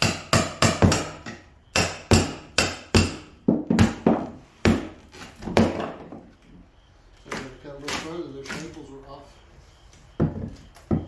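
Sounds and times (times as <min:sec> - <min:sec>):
hand hammer striking: 0:00.0 - 0:04.9.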